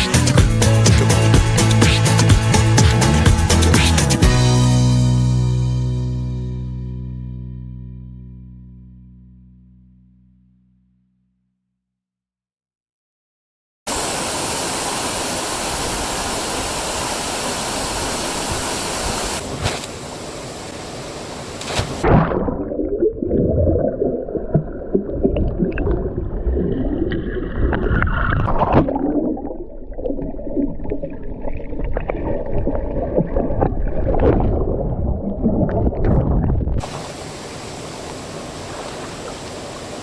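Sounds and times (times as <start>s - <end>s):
waterfall rushing hiss: 13.9s - 22.0s, 36.8s - 40.0s
muffled underwater gurgling: 22.0s - 37.0s.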